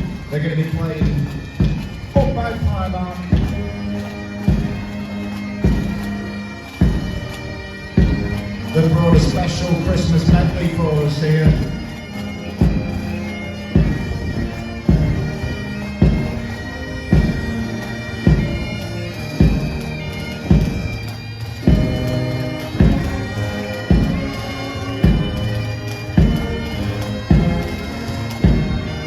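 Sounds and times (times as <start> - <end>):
big bass drum beat: 0.0 - 3.7, 6.8 - 7.1, 8.0 - 10.8, 21.7 - 22.2, 23.9 - 24.3, 26.2 - 26.5, 27.3 - 27.7, 28.4 - 28.8
brass band chords: 0.0 - 29.0.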